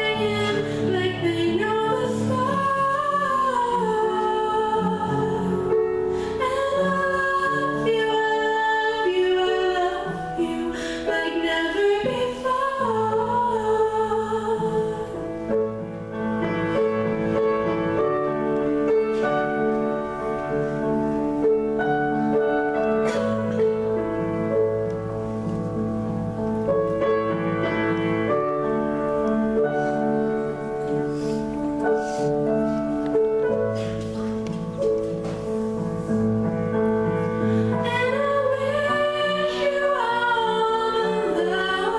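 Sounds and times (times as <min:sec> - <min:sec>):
woman singing: 0:00.0 - 0:15.3, 0:37.7 - 0:41.9
piano accompaniment: 0:00.0 - 0:41.9.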